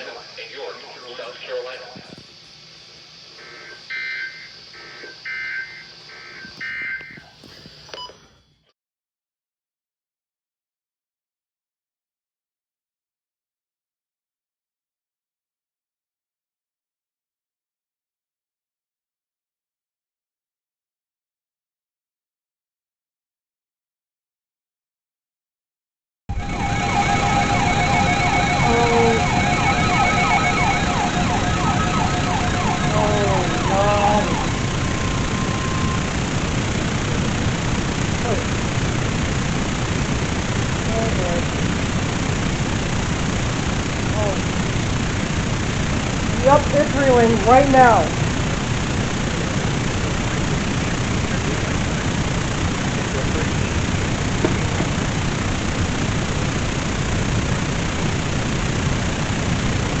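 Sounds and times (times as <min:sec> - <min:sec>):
steady hiss: 0:00.0 - 0:08.3, 0:26.4 - 1:00.0
siren yelping: 0:03.4 - 0:07.8, 0:26.3 - 0:37.6
harsh digital buzzing bursts: 0:26.4 - 0:49.2.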